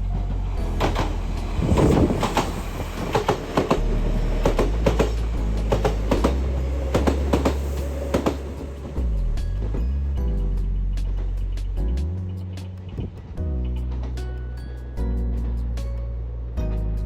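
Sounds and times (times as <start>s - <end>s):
electric train running past: 0.0s - 10.2s
train wheels clicking over rail joints: 0.2s - 10.0s.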